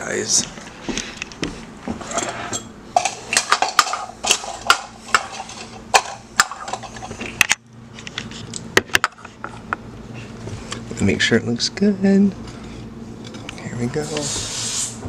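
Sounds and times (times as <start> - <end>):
hard objects clicking and rattling: 3.0 - 8.3.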